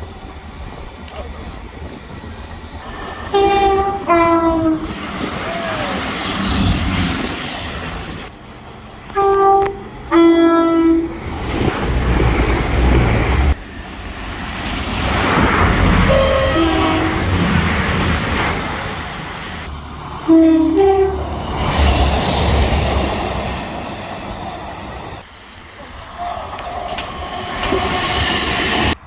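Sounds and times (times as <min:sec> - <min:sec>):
moving train: 0:00.0 - 0:29.0
two-tone train horn: 0:02.9 - 0:05.8, 0:09.1 - 0:11.2, 0:16.1 - 0:17.6, 0:20.2 - 0:21.4.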